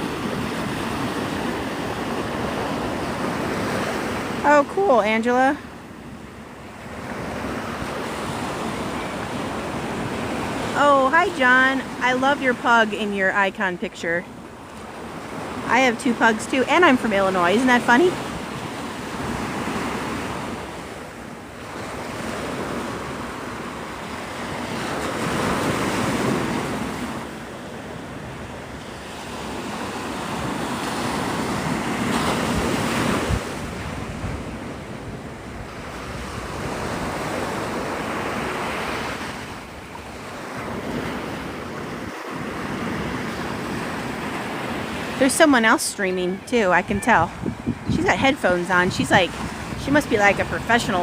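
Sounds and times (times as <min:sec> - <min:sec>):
surf washing onto beach: 0:00.0 - 0:51.0
wind buffeting microphone: 0:29.4 - 0:51.0.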